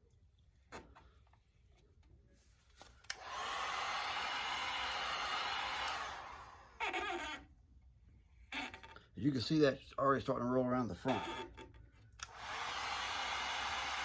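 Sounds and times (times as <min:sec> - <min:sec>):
heat gun blowing hot air: 0:03.1 - 0:06.7, 0:12.2 - 0:14.0.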